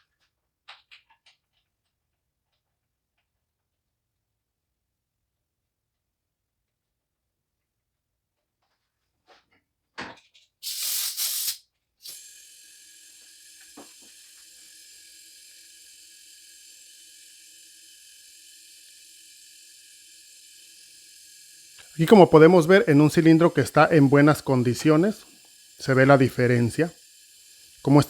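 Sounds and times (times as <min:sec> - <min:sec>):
faint air hiss with whistle: 0:10.6 - 0:21.0
burst of hissing air: 0:10.6 - 0:28.0.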